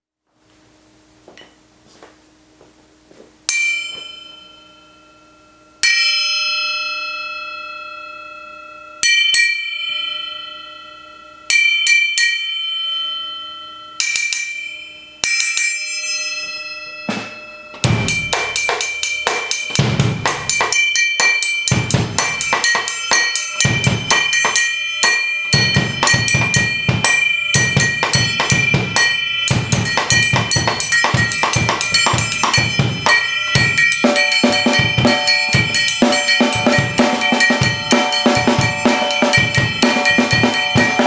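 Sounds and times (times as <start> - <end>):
bell cymbal ringing: 3.5 - 41.0
drum kit beat: 17.1 - 41.0.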